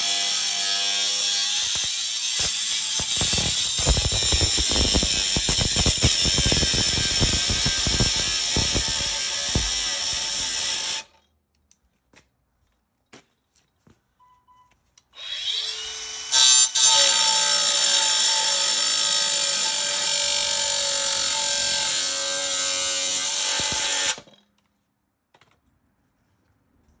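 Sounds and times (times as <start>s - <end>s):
power tool cutting metal: 0.0s - 11.1s, 15.2s - 24.4s.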